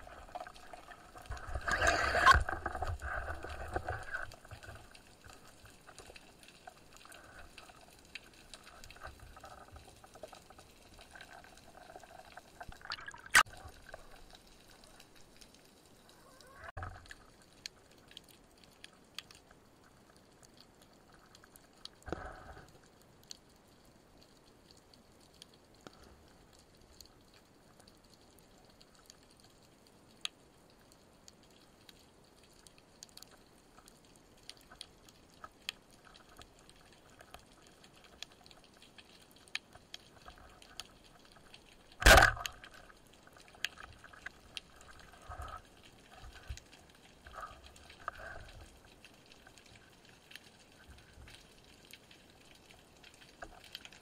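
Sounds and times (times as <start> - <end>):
underwater crackling clicks: 31.4 - 54.0.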